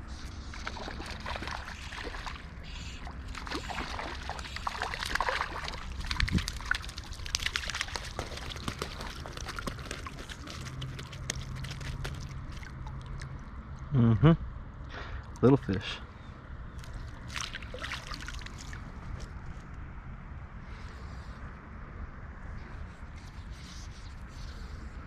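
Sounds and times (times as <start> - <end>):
river water sloshing and trickling: 0.0 - 13.9, 16.1 - 21.5.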